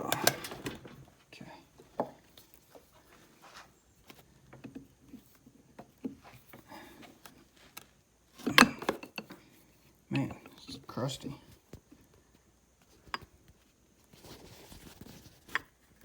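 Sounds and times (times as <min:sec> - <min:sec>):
tools clicking and tapping on metal: 0:00.0 - 0:01.0, 0:07.8 - 0:09.4.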